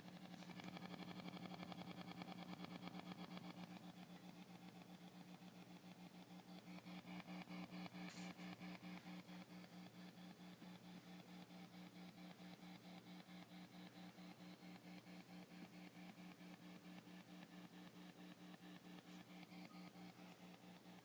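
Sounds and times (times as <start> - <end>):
amplifier hiss and hum: 5.6 - 21.0.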